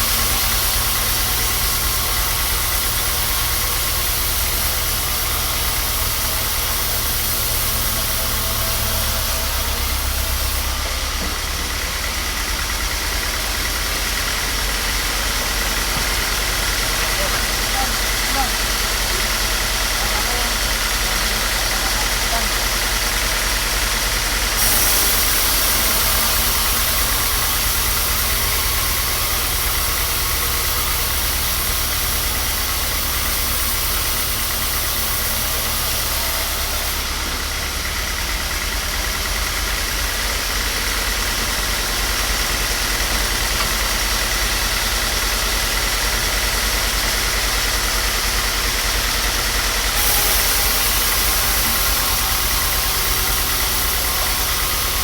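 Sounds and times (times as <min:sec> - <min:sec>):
workshop machine rumbling: 0:00.0 - 0:55.0
broad hiss: 0:18.0 - 0:37.2, 0:45.9 - 0:55.0.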